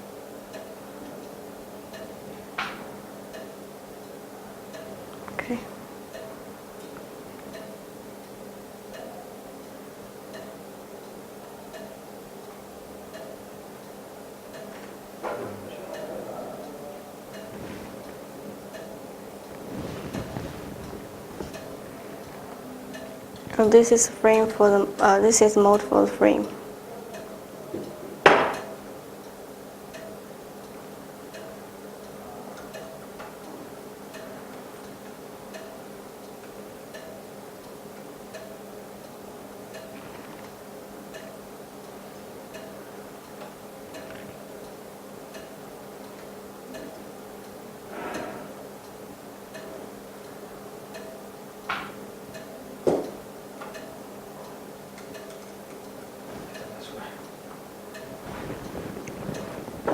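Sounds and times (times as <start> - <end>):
machine low hum: 0.0 - 59.9
faint regular ticking: 0.3 - 15.2, 15.9 - 28.0, 28.6 - 47.8, 48.8 - 59.9
scrape or clack: 47.9 - 48.6.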